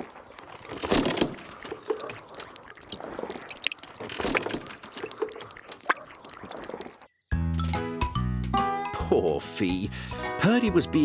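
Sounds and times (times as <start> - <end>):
apples crunching and squelching: 0.0 - 7.1.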